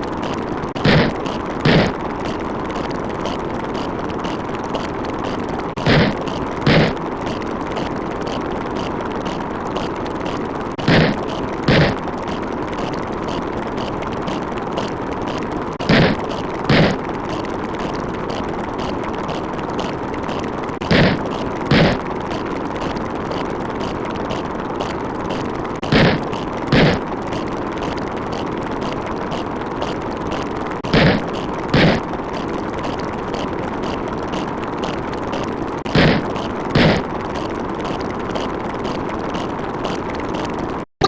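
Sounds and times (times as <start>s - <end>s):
steady rushing noise: 0.0s - 40.8s
short heavy thumps: 0.8s - 1.9s, 5.8s - 7.0s, 10.8s - 12.0s, 15.8s - 17.0s, 20.8s - 22.0s, 25.8s - 27.0s, 30.8s - 32.0s, 35.9s - 37.0s.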